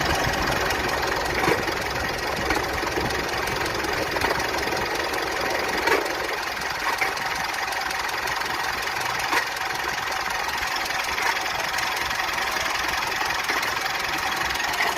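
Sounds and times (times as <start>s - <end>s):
sharp engine knocks: 0.0s - 4.8s
vehicle engine running: 0.0s - 14.9s.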